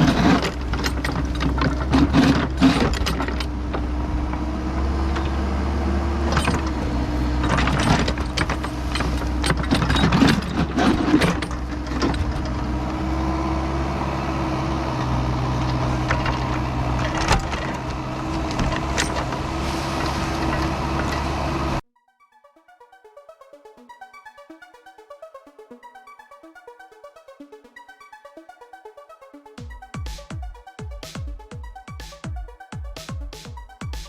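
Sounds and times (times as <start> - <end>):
bucket clunking and scraping soil: 0.0 - 13.1, 15.0 - 21.8
excavator diesel engine running: 0.0 - 21.8
hydraulic whine: 0.0 - 21.8.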